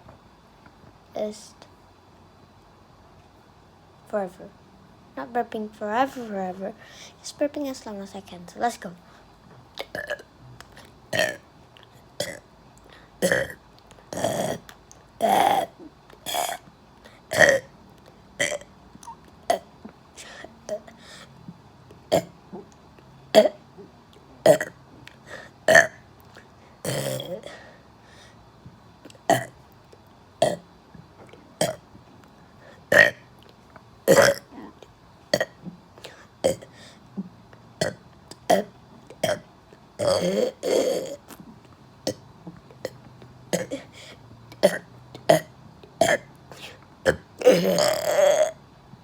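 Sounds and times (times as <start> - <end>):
person burping: 9.8 - 10.3, 11.1 - 11.4, 12.2 - 12.4, 13.2 - 14.6, 15.2 - 16.6, 17.3 - 17.7, 22.1 - 22.7, 24.4 - 24.8, 25.7 - 26.0, 26.8 - 27.5, 31.6 - 31.8, 32.9 - 33.2, 34.1 - 34.5, 36.4 - 36.7, 40.0 - 41.2, 44.6 - 46.3, 47.1 - 48.6.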